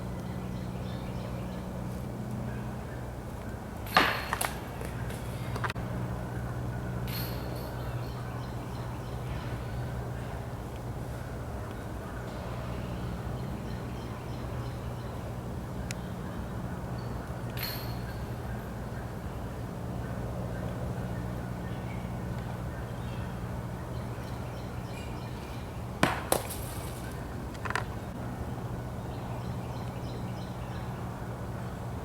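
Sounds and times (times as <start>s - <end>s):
steady low hum: 0.0s - 32.0s
disc striking metal chains: 7.1s - 8.1s.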